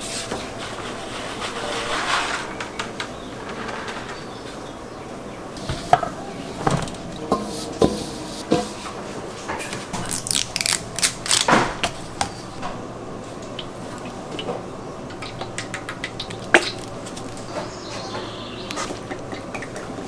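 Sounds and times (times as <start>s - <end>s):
scrapes: 0.0s - 4.9s, 5.5s - 9.9s
utensils and dishes knocking: 5.7s - 9.0s.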